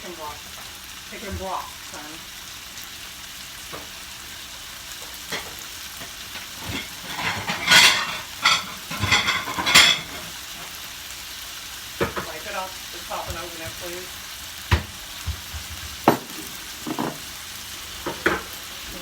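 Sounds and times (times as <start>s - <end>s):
chicken sizzling in a frying pan: 0.0s - 19.0s
scraping and clattering while stirring: 6.4s - 10.3s.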